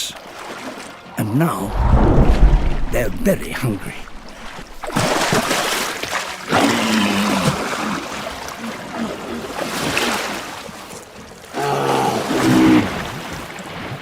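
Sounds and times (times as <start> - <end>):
surf washing on beach: 1.6 - 5.7.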